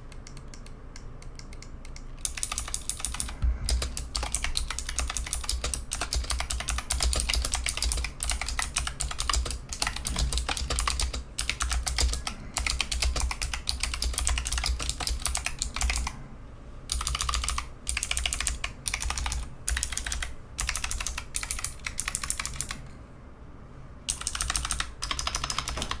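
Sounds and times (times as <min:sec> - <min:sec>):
clicky keyboard typing: 0:00.0 - 0:16.2, 0:16.9 - 0:23.0, 0:24.1 - 0:26.0.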